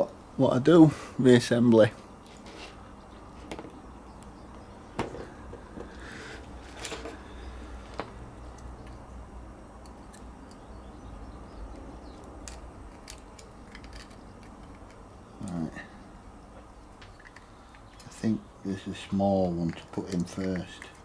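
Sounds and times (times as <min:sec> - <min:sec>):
small parts clicking and knocking: 0:05.0 - 0:07.2, 0:09.8 - 0:10.8, 0:11.7 - 0:15.6, 0:17.0 - 0:18.2, 0:19.4 - 0:21.0.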